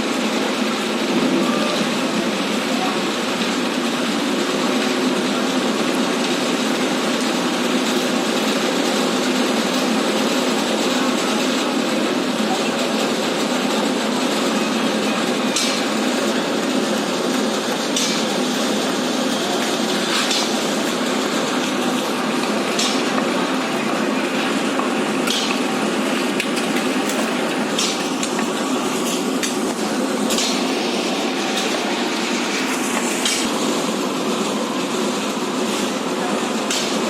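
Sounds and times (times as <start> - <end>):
building site din: 14.0 - 37.0.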